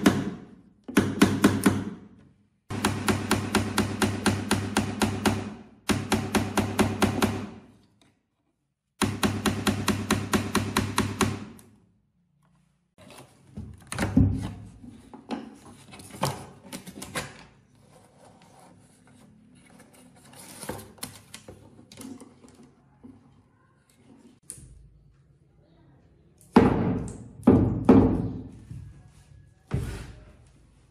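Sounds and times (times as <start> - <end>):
workshop tool striking rapidly: 2.7 - 7.5.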